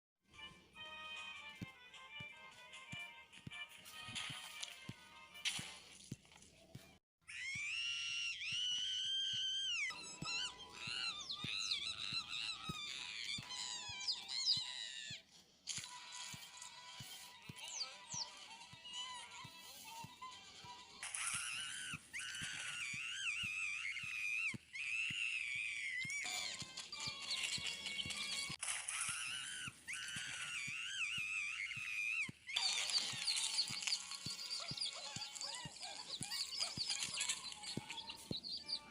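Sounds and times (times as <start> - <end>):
squeaky cartoon voice chattering: 7.3 - 15.2, 17.2 - 38.9
high chirping animal calls: 7.7 - 15.1, 21.2 - 38.9.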